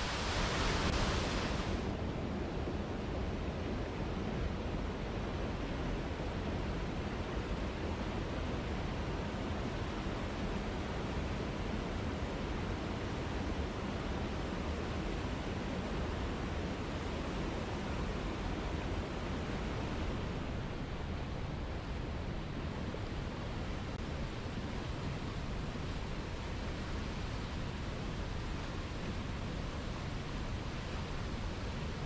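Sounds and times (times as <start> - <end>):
waterfall rushing: 0.0 - 1.8.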